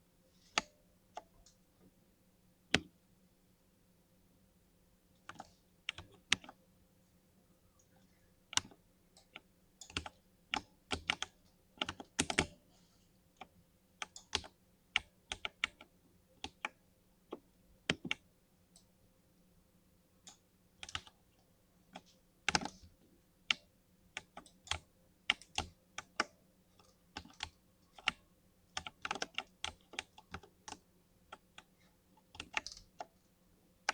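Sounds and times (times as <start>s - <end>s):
mechanical keyboard typing: 9.9s - 12.5s, 28.8s - 31.6s, 32.3s - 33.1s.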